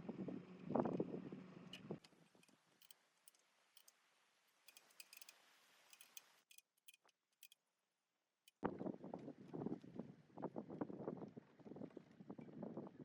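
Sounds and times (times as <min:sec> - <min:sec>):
faint clicks and ticks: 0:01.7 - 0:04.0, 0:04.6 - 0:07.6.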